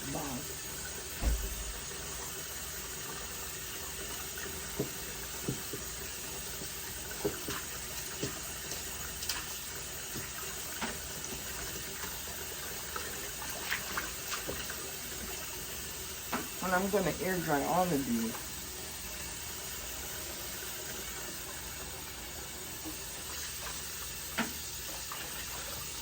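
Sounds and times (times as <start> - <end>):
tap water running into sink: 0.0 - 26.0
light knocks and splashes: 1.2 - 1.9, 7.2 - 11.4, 13.4 - 14.8.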